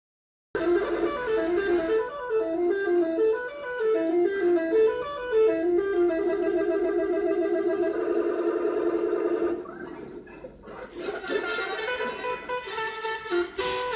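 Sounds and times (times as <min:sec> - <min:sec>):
bus musical air horn: 0:00.6 - 0:08.1, 0:11.6 - 0:13.9.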